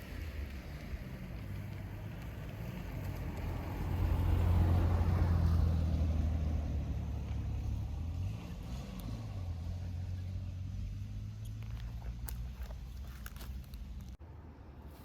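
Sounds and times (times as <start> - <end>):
vehicle engine rumble passing: 0.0 - 15.0.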